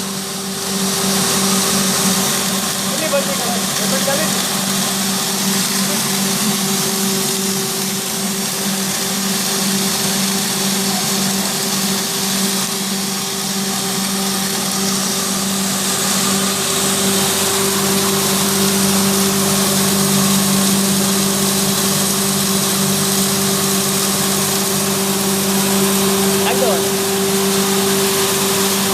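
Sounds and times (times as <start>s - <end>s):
grinding machine running: 0.0s - 28.9s.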